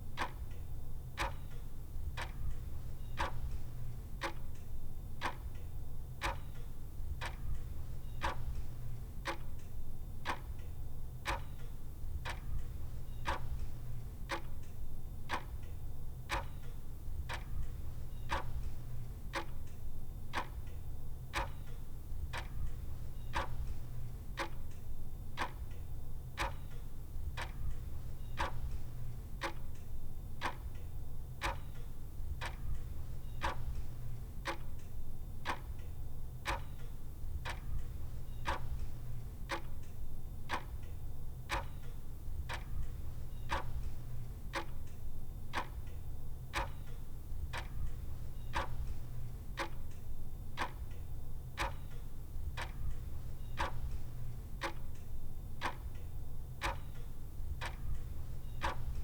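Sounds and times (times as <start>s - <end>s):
clock ticking: 32.4s - 34.8s, 36.4s - 39.9s, 41.5s - 45.9s, 46.5s - 50.0s, 50.6s - 51.0s, 51.6s - 59.0s.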